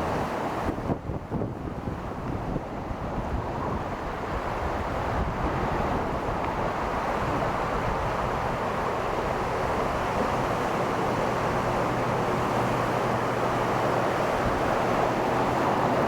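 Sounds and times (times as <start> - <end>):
ocean surf washing: 0.0 - 16.0
wind buffeting microphone: 0.0 - 16.0.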